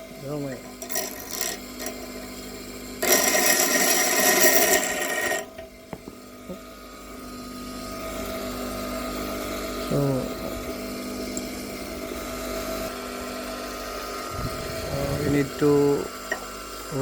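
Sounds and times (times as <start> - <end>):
electric grinder grinding metal: 0.0 - 5.6, 9.1 - 17.0.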